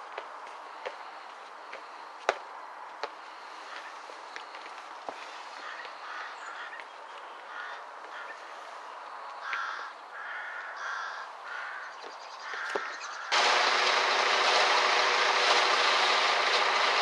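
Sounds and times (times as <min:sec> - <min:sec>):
crow cawing: 0:05.5 - 0:06.8, 0:07.5 - 0:08.7, 0:09.4 - 0:13.3.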